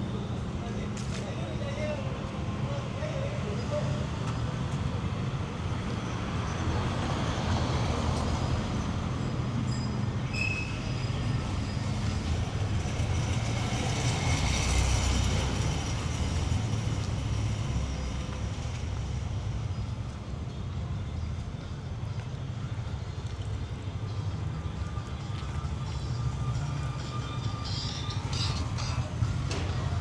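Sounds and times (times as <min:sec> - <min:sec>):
high squeal: 0:09.2 - 0:12.0.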